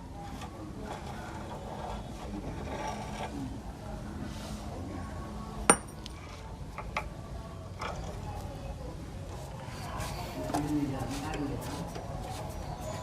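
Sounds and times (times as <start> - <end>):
light rubbing and scraping: 0.0 - 5.0, 9.2 - 13.0
sharp ringing clink: 5.7 - 6.0.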